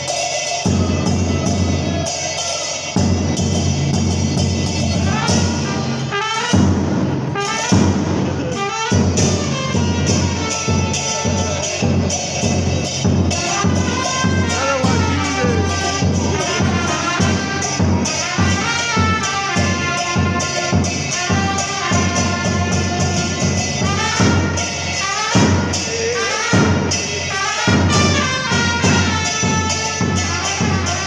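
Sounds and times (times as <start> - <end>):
trumpets playing a melody: 0.6 - 31.0
bass drum beat: 6.6 - 24.6.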